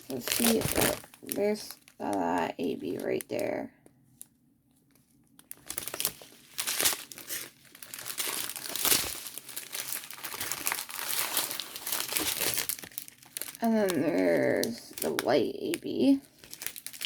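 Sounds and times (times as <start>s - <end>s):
plastic bags crinkling: 0.0s - 17.0s.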